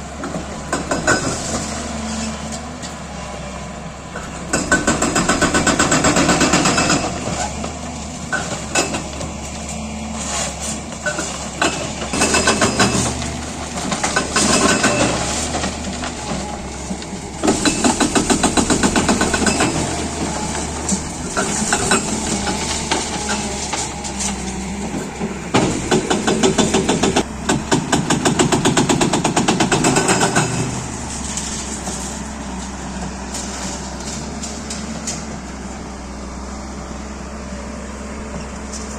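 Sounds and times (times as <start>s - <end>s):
diesel engine running: 0.0s - 38.9s
hydraulic breaker hammering: 17.3s - 23.9s.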